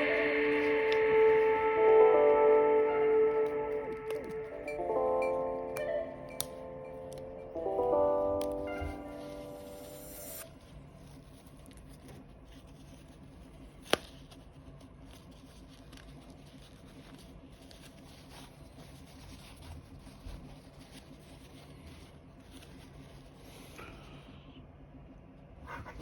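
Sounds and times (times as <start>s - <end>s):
music: 0.0s - 10.6s.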